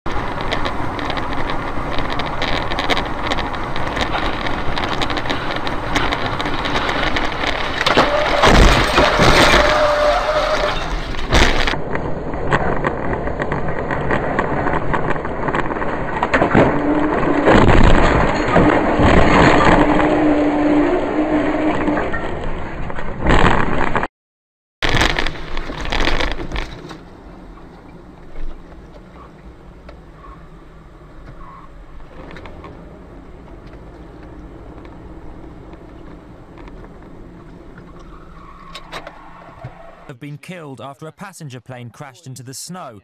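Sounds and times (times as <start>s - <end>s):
crashing and breaking: 0.4s - 11.8s, 12.5s - 20.3s, 24.8s - 27.0s.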